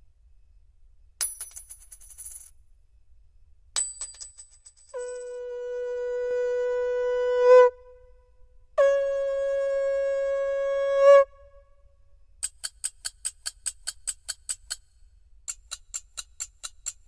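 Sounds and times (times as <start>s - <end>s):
keyboard horn-like blasts: 5.0s - 7.9s, 8.8s - 11.3s.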